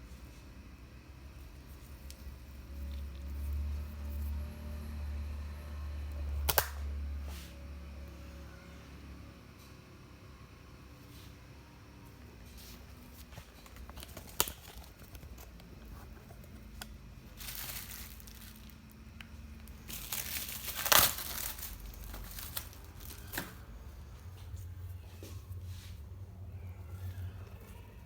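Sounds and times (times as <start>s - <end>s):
rustling crinkling handling noise: 12.2s - 28.0s.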